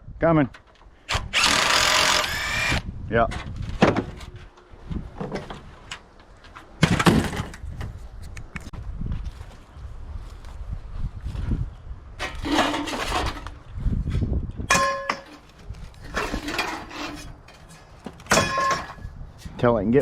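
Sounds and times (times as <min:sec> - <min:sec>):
scrap metal rattling and scraping: 0:12.2 - 0:13.6, 0:14.7 - 0:20.0.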